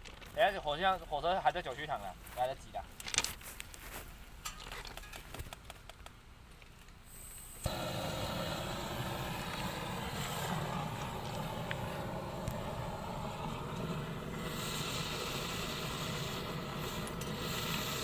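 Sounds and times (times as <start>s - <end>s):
loud rushing hiss of burning powder: 7.0s - 18.0s.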